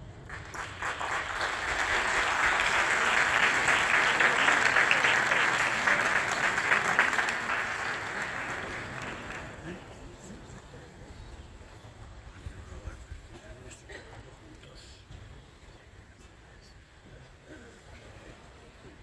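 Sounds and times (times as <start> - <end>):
crowd applauding: 0.0 - 10.2.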